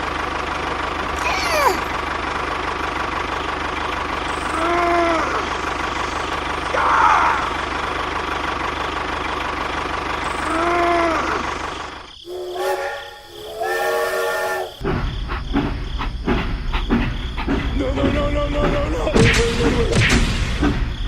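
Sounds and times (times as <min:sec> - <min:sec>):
engine hiss and rumble: 0:00.0 - 0:14.2, 0:14.8 - 0:21.0
train horn blasts: 0:12.3 - 0:14.8
low rumble with knocks: 0:14.8 - 0:21.0.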